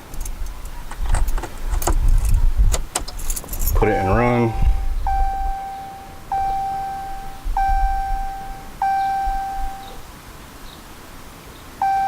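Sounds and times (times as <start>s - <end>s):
warning chime ding: 3.8s - 10.0s.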